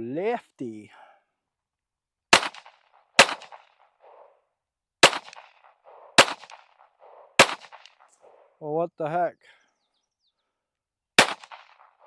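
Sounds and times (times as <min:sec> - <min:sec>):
pistol shots with echo: 0:02.3 - 0:04.2, 0:05.0 - 0:08.0, 0:11.2 - 0:12.0.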